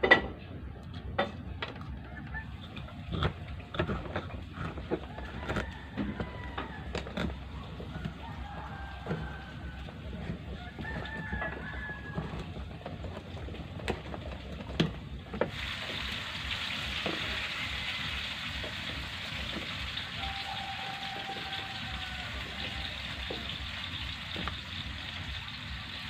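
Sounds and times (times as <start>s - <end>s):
rooster crowing: 1.9s - 2.9s, 4.9s - 12.6s, 17.3s - 18.8s, 20.0s - 23.6s.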